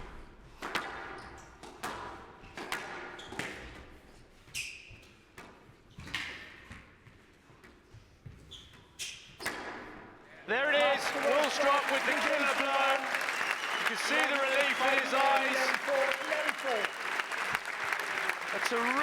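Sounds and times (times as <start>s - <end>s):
shoe squeaks on court floor: 8.4s - 9.4s.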